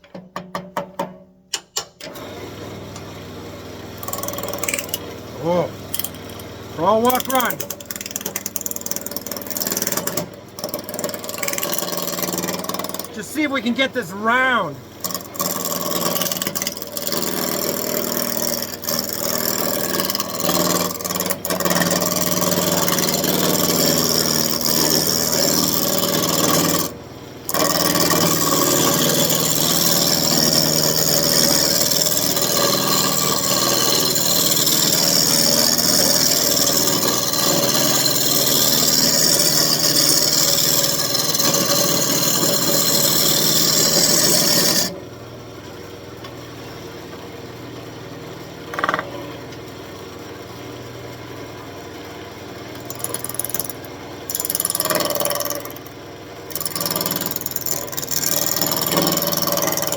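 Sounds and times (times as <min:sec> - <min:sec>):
tool scraping wood on lathe: 0:04.0 - 0:26.9, 0:27.5 - 0:44.9, 0:52.8 - 0:55.9, 0:56.5 - 0:59.9.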